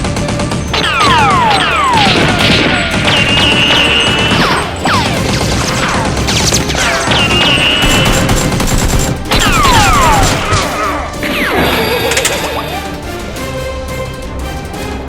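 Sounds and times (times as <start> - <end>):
rapid gunfire: 0.0 - 11.6
action soundtrack music: 0.0 - 15.0.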